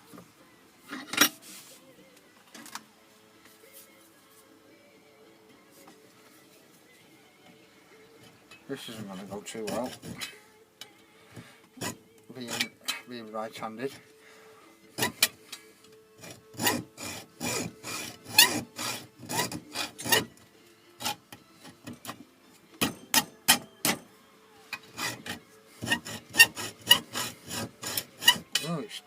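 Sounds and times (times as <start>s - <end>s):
hand tool rasping on metal: 8.9s - 10.4s, 11.8s - 13.1s, 14.9s - 15.4s, 16.2s - 20.4s, 21.0s - 22.2s, 22.8s - 24.0s, 24.8s - 28.8s.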